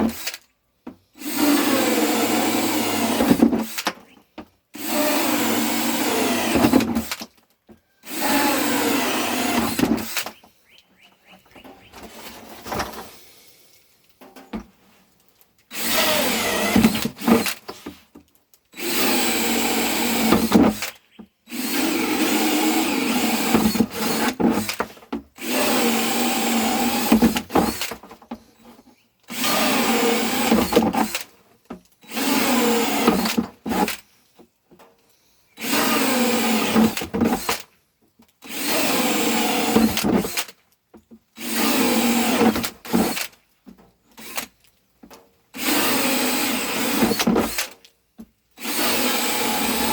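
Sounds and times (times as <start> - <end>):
power drill running: 1.2 - 3.8, 4.8 - 7.2, 8.0 - 10.4, 15.7 - 17.6, 18.8 - 24.8, 25.4 - 27.9, 29.3 - 31.2, 32.0 - 34.0, 35.6 - 37.6, 38.4 - 40.5, 41.4 - 43.3, 45.6 - 47.8, 48.6 - 49.9.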